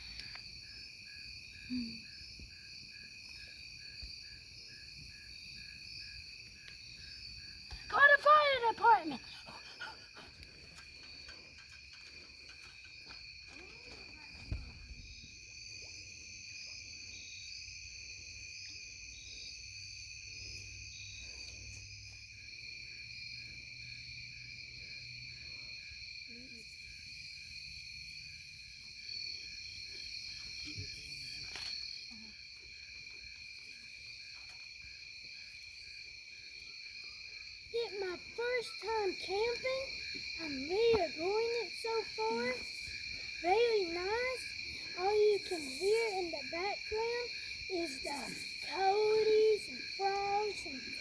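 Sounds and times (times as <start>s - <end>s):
crickets trilling: 0.0s - 51.0s
frogs calling: 37.7s - 51.0s.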